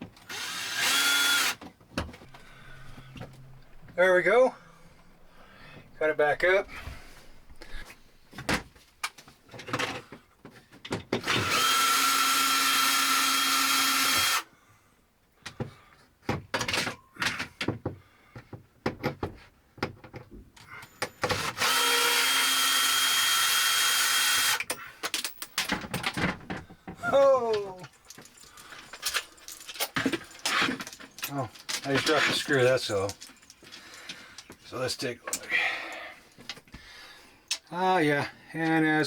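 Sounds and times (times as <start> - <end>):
cordless drill driving screws: 0.2 - 1.6, 11.2 - 14.5, 21.0 - 24.8
handling clicks and knocks: 24.6 - 34.7.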